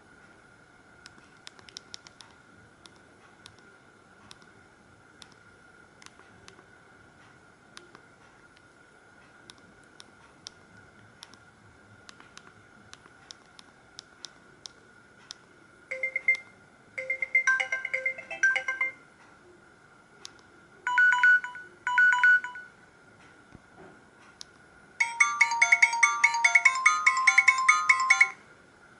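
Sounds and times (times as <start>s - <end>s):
phone ringtone melody: 15.9s - 19.0s, 20.9s - 22.7s, 25.0s - 28.4s.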